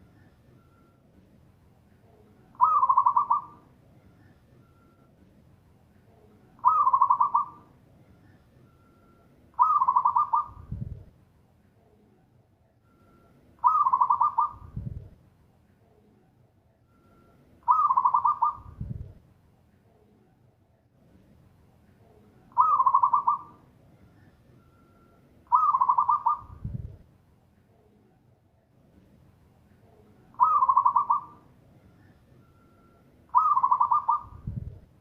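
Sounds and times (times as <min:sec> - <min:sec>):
dove cooing: 0:02.5 - 0:04.4, 0:06.6 - 0:07.7, 0:09.6 - 0:10.8, 0:13.6 - 0:15.0, 0:17.6 - 0:19.0, 0:22.5 - 0:23.6, 0:25.5 - 0:27.0, 0:30.4 - 0:32.2, 0:33.3 - 0:34.8.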